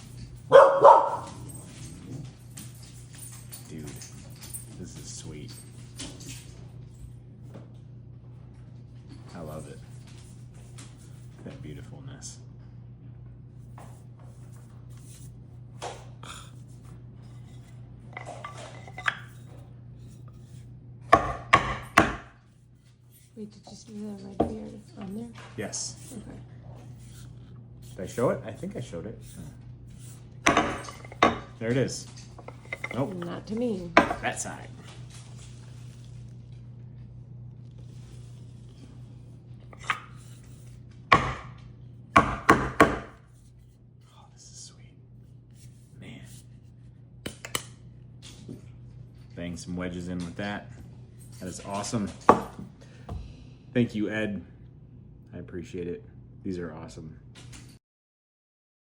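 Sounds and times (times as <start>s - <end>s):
steady low hum: 0.0s - 57.8s
wooden mallet knocking: 21.2s - 22.3s, 41.2s - 41.5s, 42.2s - 43.2s
rubs and rustles: 22.4s - 40.9s.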